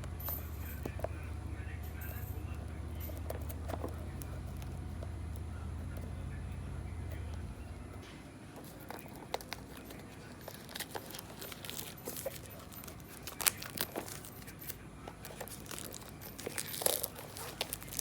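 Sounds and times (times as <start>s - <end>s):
packaging crinkling: 8.5s - 18.0s.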